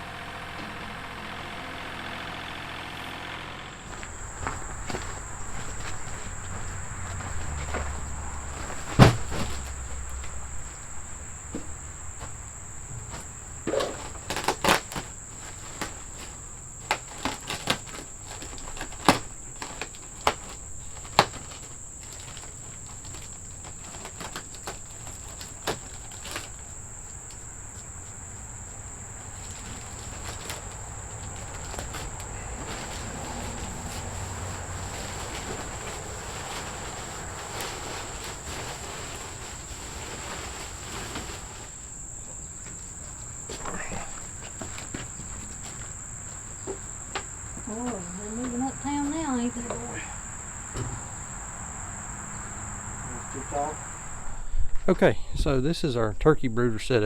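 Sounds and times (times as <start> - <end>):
insect chorus drone: 0.0 - 57.0
knocks and clatter: 3.8 - 27.4.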